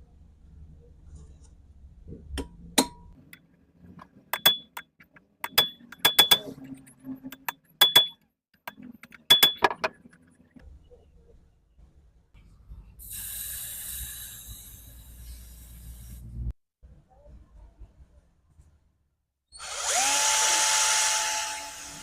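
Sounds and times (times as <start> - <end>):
metal parts and tools clinking: 4.4 - 10.1.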